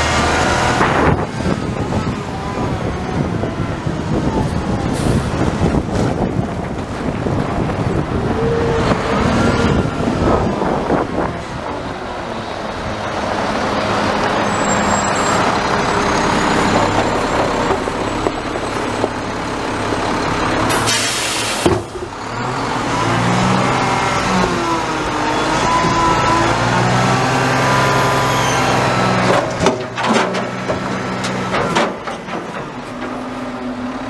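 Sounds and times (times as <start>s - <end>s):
garbage truck engine running: 0.0s - 34.0s
air brakes hissing: 4.9s - 5.4s, 20.7s - 21.8s.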